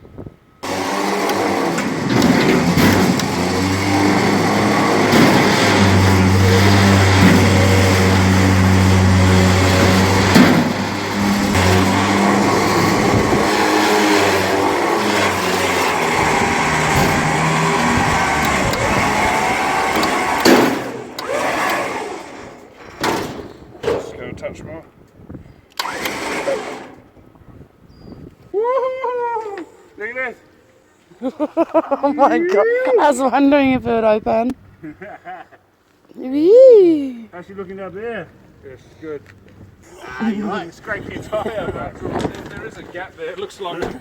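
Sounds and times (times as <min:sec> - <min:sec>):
electric winch motor humming: 0:00.6 - 0:23.2, 0:25.8 - 0:27.1.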